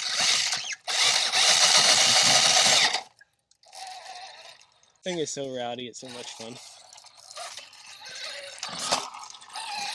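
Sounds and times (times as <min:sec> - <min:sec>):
rc car electric motor whining: 0:00.0 - 0:03.1, 0:07.4 - 0:09.9.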